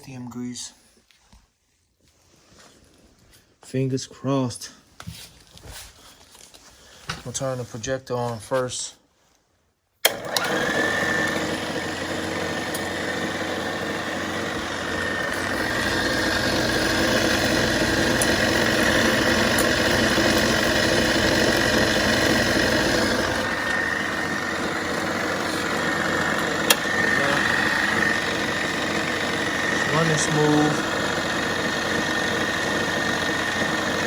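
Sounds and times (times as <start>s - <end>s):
movie projector humming and whining: 10.0s - 34.0s.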